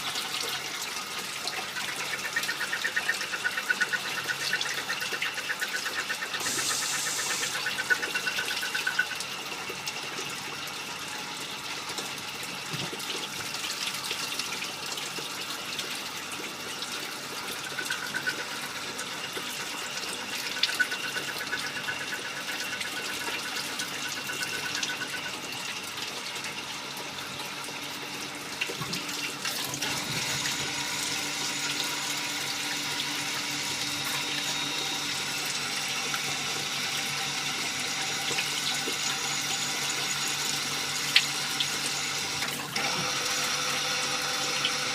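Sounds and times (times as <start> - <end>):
lathe running with rushing hiss: 1.8 - 8.9.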